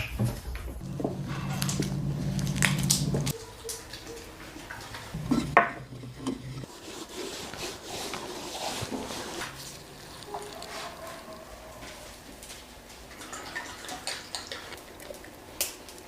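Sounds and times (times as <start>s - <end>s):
utensils scraping and clinking: 0.8s - 12.2s.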